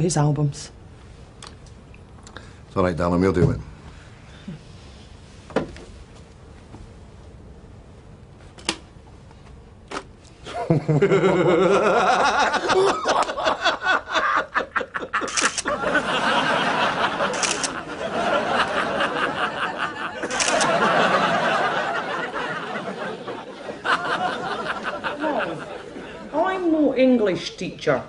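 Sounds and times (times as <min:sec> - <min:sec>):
camera shutter clicks: 0:15.2 - 0:15.7, 0:17.3 - 0:17.8, 0:20.2 - 0:20.8.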